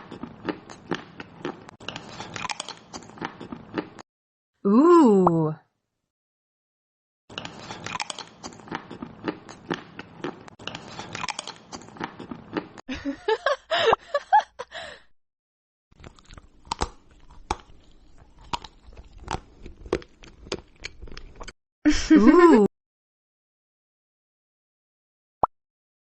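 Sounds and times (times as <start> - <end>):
crunchy chewing: 0.0 - 4.0, 7.3 - 12.8, 16.0 - 21.6.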